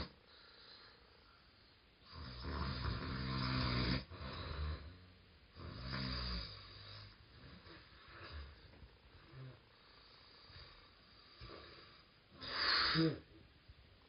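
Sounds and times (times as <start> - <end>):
person snoring: 2.0 - 13.3.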